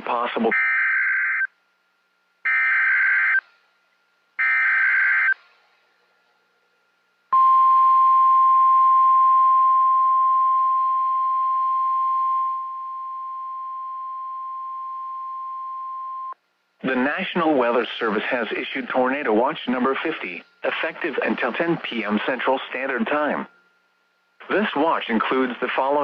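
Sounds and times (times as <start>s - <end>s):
steady attention tone: 7.3s - 24.8s.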